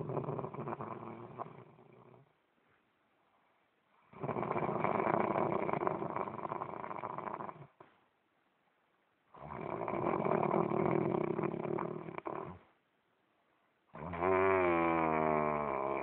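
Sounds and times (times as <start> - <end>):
man snoring: 0.0 - 2.2, 4.1 - 7.7, 9.4 - 12.6, 14.0 - 16.0.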